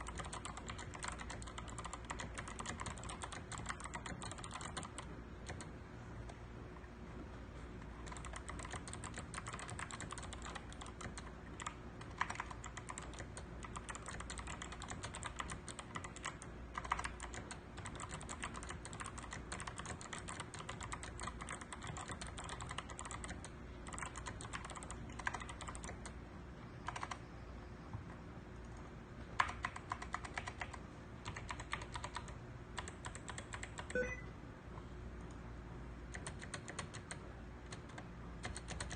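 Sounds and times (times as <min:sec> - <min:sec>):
mechanical keyboard typing: 0:00.0 - 0:06.4, 0:08.0 - 0:26.2, 0:26.8 - 0:27.3, 0:29.4 - 0:34.2, 0:36.1 - 0:38.9.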